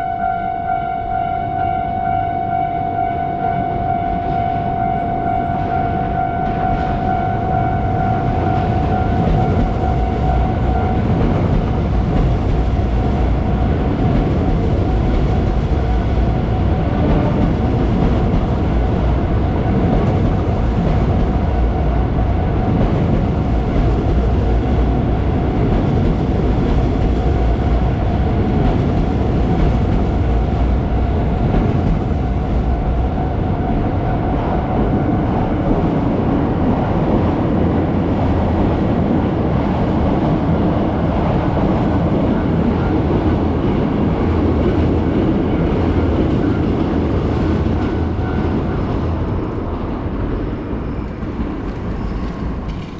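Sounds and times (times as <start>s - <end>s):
level crossing alarm tone: 0.0s - 11.1s
train wheels rumbling on rails: 4.1s - 52.9s.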